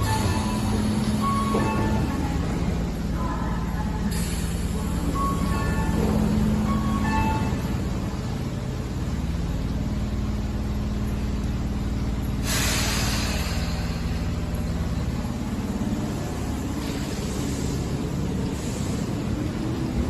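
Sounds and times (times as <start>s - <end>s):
electric train humming: 0.0s - 20.0s
short hiss of air: 12.4s - 14.0s.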